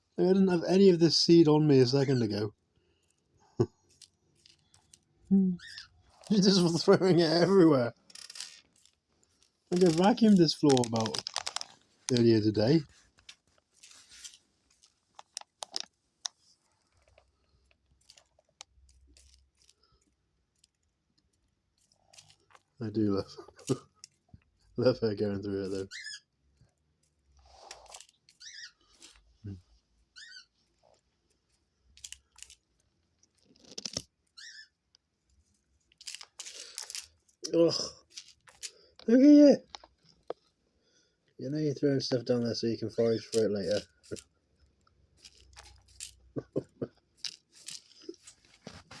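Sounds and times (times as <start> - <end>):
dove warbling squeak: 5.5 - 6.0, 25.9 - 26.3, 28.3 - 29.0, 30.2 - 30.6, 34.4 - 34.8
seeds landing: 9.7 - 12.9.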